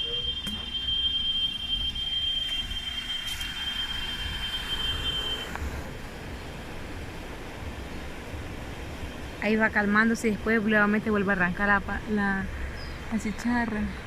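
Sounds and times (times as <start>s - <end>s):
cicada high-pitched whine: 0.0s - 6.6s.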